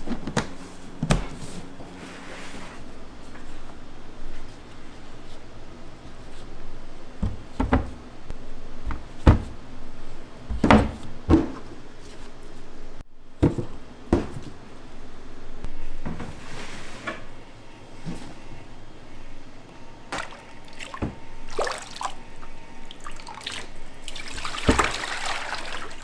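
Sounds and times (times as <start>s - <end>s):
knocks and thuds of kitchen work: 0.0s - 1.5s, 7.2s - 8.0s, 8.8s - 9.6s, 10.4s - 11.8s, 13.3s - 14.6s, 20.1s - 21.3s, 24.6s - 25.2s.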